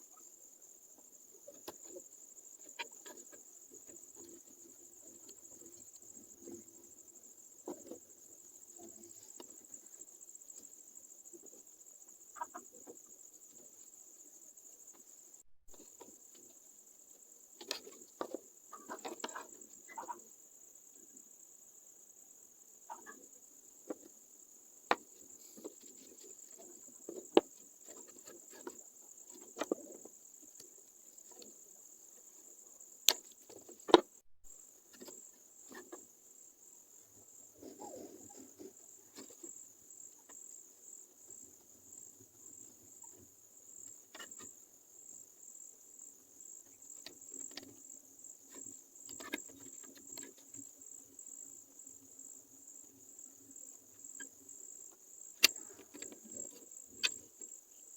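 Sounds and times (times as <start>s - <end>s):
cricket trill: 0.0s - 57.9s.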